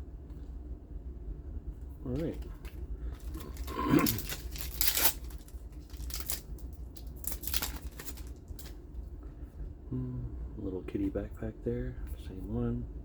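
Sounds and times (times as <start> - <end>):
wrapper tearing and crinkling: 3.2 - 8.8.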